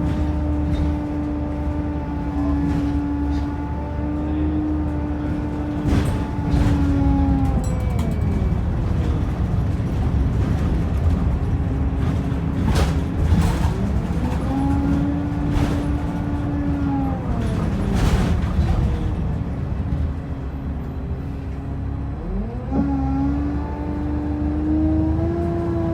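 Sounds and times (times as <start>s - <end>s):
bus engine and road noise: 0.0s - 25.9s
sharp knocks and rattles: 5.5s - 16.6s.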